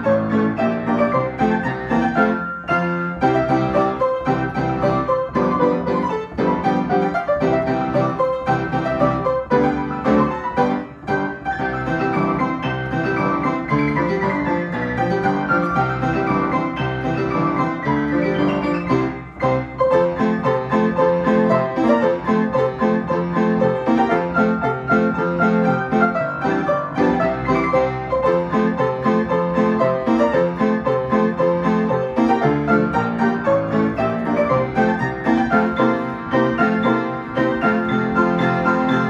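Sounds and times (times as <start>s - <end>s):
piano playing lively tune: 0.0s - 39.0s.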